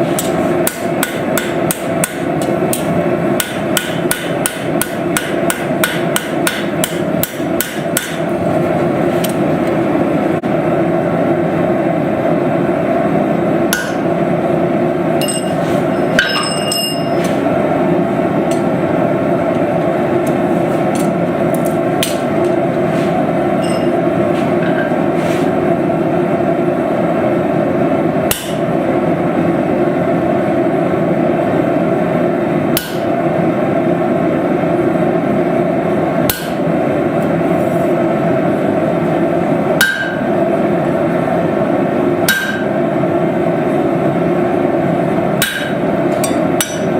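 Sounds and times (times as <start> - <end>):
loud steady roar: 0.0 - 46.9
hammer blows on anvil: 15.2 - 17.4, 23.6 - 24.0, 39.8 - 40.3, 42.3 - 42.8, 45.4 - 46.9.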